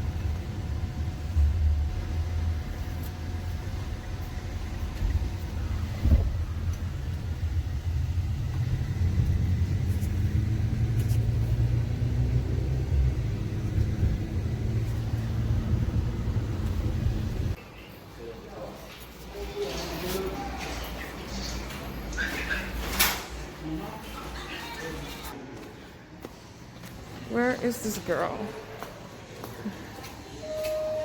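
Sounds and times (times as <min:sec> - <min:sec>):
car engine and road rumble: 0:00.0 - 0:17.6.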